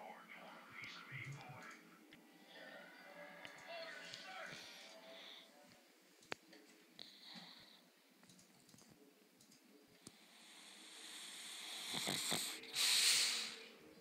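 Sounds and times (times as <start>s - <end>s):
dog snoring: 10.1s - 13.6s.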